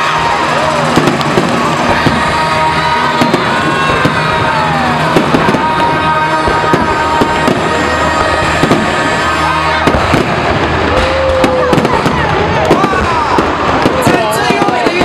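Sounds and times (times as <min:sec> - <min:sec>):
fireworks banging and crackling: 0:00.0 - 0:15.0
music playing: 0:00.0 - 0:15.0.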